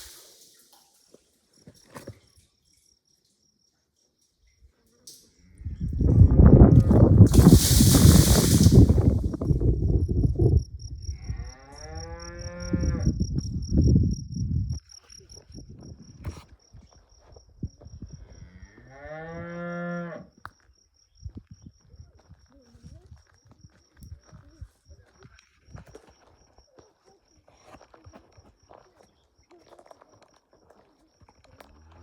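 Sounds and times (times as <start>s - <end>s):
insect chirping: 0.0s - 5.9s, 7.3s - 18.3s, 20.6s - 22.4s.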